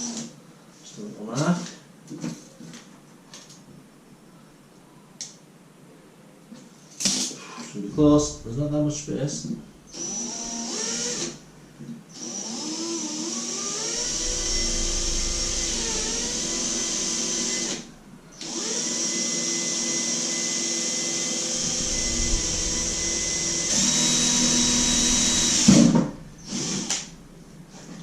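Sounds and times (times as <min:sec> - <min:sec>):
electric drill running: 0:09.9 - 0:11.4, 0:12.2 - 0:27.1.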